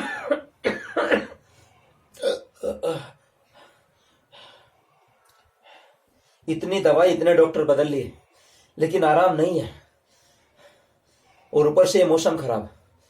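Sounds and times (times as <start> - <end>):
person coughing hard: 0.0 - 1.4, 2.2 - 3.2
faint breaths or sniffs: 9.8 - 11.6.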